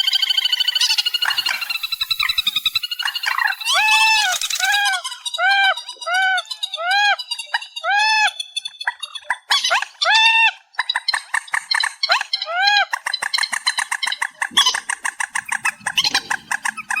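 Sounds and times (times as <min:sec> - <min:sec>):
bird calling nasal notes: 0:00.0 - 0:05.2
bird chatter: 0:00.0 - 0:10.1, 0:10.8 - 0:17.0.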